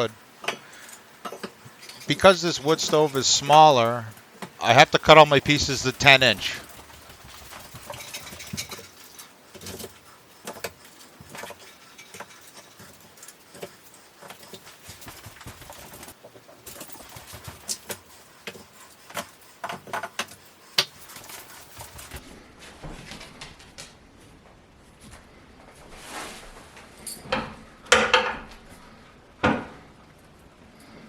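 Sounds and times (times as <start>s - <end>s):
firewood logs knocking and clunking: 5.8s - 22.2s.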